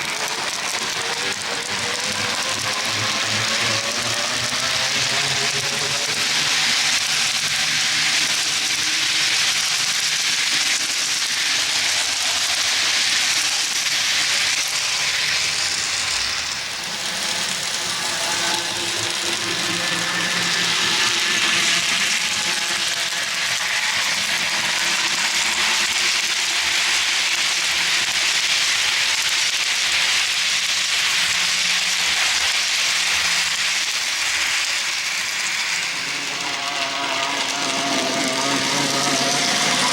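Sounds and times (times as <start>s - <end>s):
small metal wheels clattering on rails: 0.0s - 39.9s
electric motor whine: 31.6s - 39.9s.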